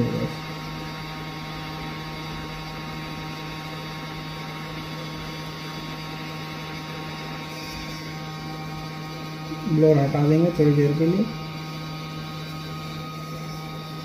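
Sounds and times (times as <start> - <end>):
hot-air blower humming: 0.0 - 14.0.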